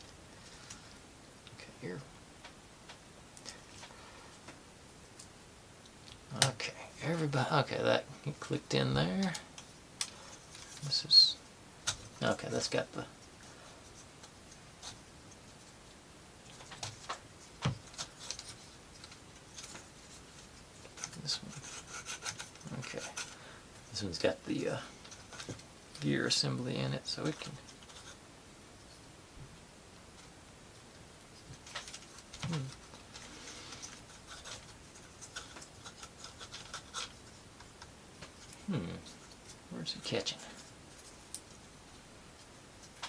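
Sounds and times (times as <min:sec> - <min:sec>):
wooden parts clicking and scraping: 0:25.0 - 0:26.1, 0:31.5 - 0:39.6.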